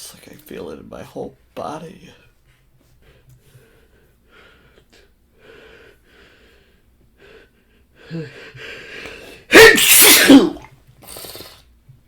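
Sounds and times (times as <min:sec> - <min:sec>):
man sneezing loudly: 0:09.2 - 0:11.3.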